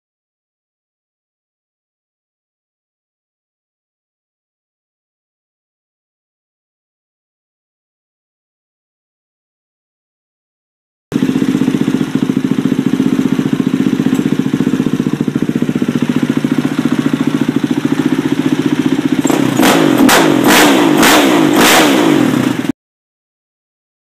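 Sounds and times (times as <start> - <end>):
engine revving: 11.1 - 22.7
motorcycle engine idling: 11.1 - 22.7.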